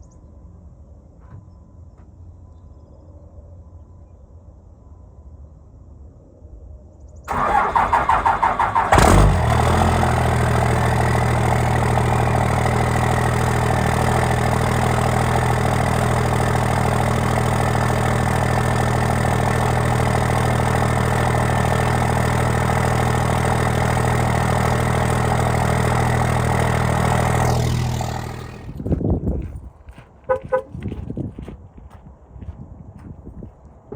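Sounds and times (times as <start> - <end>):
starter motor cranking: 7.3 - 12.6
diesel engine idling: 7.3 - 29.0.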